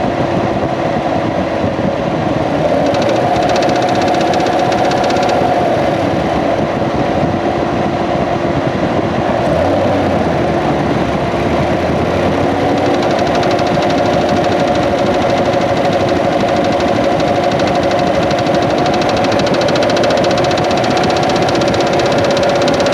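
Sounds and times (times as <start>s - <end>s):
car engine running: 2.3s - 7.0s, 9.3s - 22.9s
fast even ticking: 2.5s - 6.2s, 9.4s - 22.9s.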